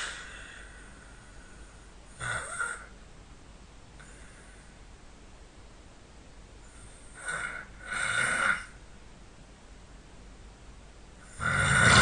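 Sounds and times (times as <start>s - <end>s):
person snoring: 11.2s - 12.0s.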